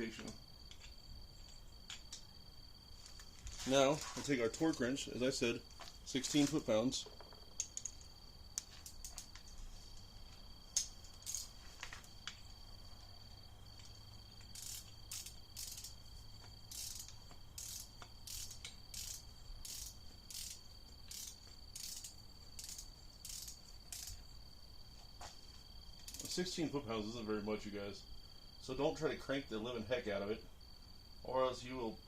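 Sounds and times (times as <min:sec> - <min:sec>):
ratcheting torque wrench clicking: 0:07.2 - 0:09.3, 0:10.8 - 0:11.6, 0:14.4 - 0:16.1, 0:16.7 - 0:24.2, 0:26.0 - 0:26.4.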